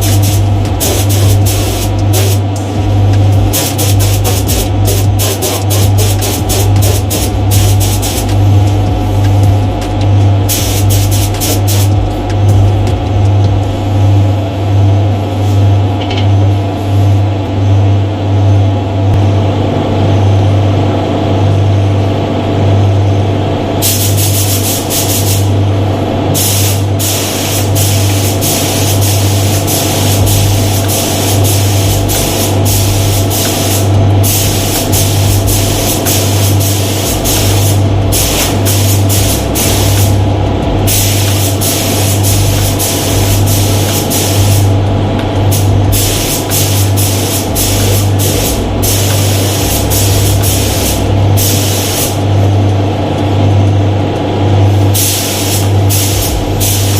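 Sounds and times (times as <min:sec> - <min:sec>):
paint spray gun hissing in bursts: 0:00.0 - 0:02.8, 0:03.4 - 0:08.6, 0:10.4 - 0:12.0, 0:23.8 - 0:25.5, 0:26.4 - 0:40.2, 0:40.9 - 0:44.7, 0:45.5 - 0:52.3, 0:54.8 - 0:56.9
steady low hum: 0:00.0 - 0:56.9.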